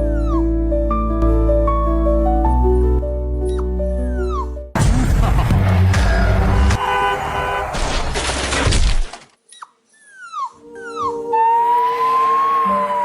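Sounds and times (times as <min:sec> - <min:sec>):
puppy whimpering: 0:00.0 - 0:00.5, 0:03.5 - 0:04.6, 0:09.5 - 0:11.7.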